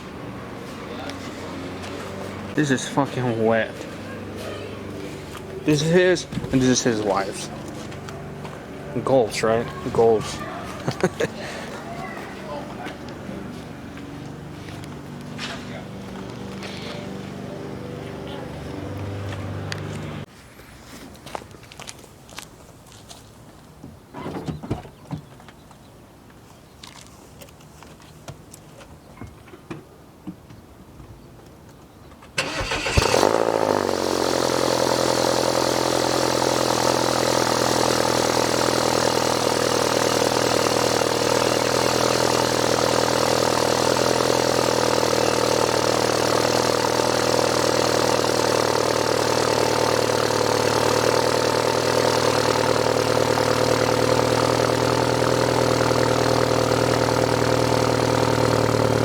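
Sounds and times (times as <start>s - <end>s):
car engine starting and idling: 0.0s - 20.3s, 32.3s - 59.0s.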